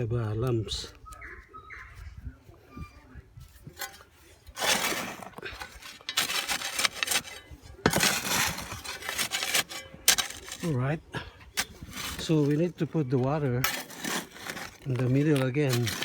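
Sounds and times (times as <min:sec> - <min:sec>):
tool scraping gritty cement mix: 0:03.6 - 0:16.0.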